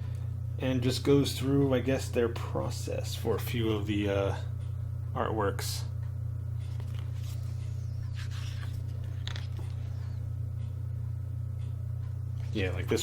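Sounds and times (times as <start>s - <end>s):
low electrical hum: 0.0s - 13.0s
book pages turning: 6.6s - 10.2s.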